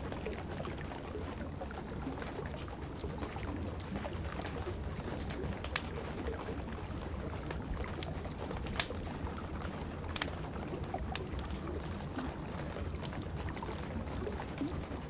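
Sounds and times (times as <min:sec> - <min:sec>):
campfire crackling: 0:01.8 - 0:14.8
burning wood popping: 0:10.1 - 0:10.3.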